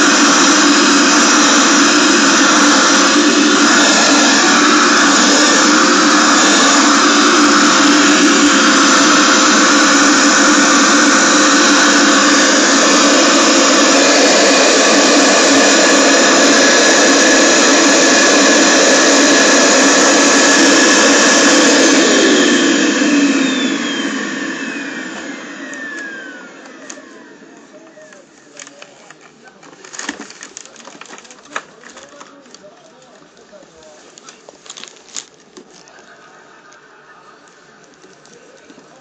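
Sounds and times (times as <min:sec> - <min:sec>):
motor winding down whine: 0:00.0 - 0:28.8
vacuum cleaner whirring: 0:00.0 - 0:39.0.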